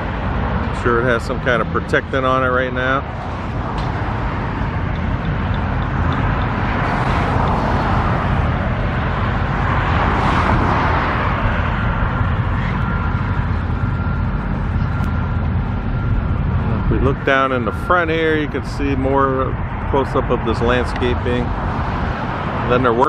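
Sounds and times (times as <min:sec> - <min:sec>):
road traffic rumble: 0:00.0 - 0:23.0
vehicles passing: 0:00.0 - 0:23.0.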